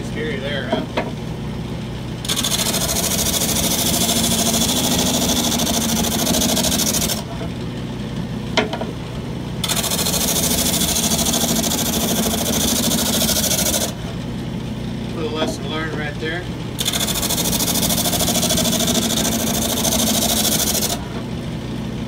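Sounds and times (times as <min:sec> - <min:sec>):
wood lathe motor hum: 0:02.2 - 0:07.4, 0:09.6 - 0:14.1, 0:16.8 - 0:21.2.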